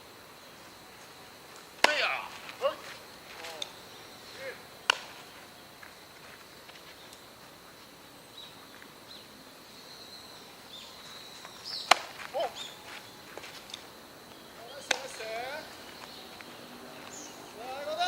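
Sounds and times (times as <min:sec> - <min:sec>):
club striking ball: 0:01.8 - 0:02.1, 0:04.8 - 0:05.2, 0:11.8 - 0:12.2.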